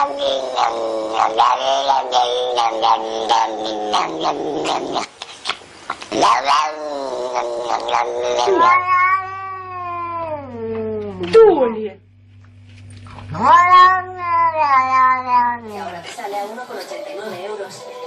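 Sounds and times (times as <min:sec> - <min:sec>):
cat yowling: 0:06.2 - 0:11.3, 0:13.3 - 0:15.7.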